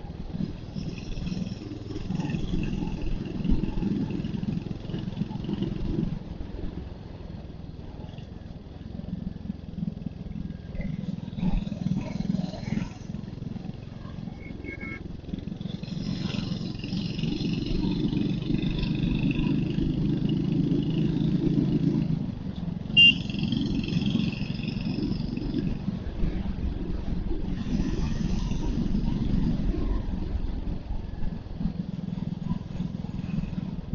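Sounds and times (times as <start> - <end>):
motorcycle engine while riding: 0.0 - 33.9
short loud horn beep: 23.0 - 23.3.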